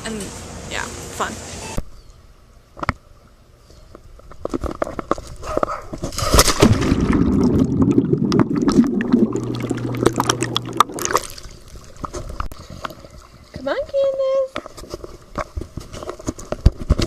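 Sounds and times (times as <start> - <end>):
water splashing and gurgling: 6.1 - 16.9
steady low hum: 6.8 - 12.5.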